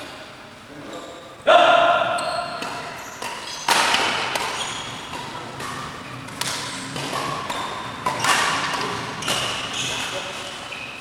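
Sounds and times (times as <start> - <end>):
racket striking shuttlecock: 2.4 - 10.2.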